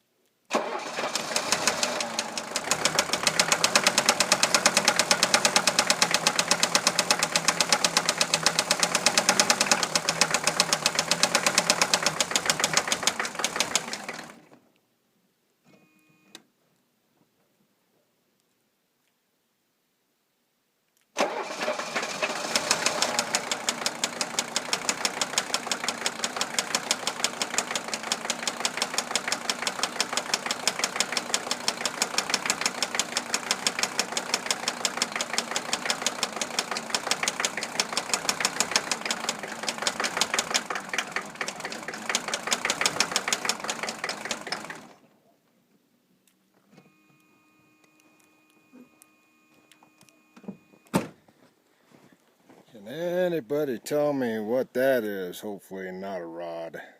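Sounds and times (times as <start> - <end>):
diesel engine knocking: 1.6 - 14.4, 22.6 - 44.9
man talking: 52.7 - 56.9.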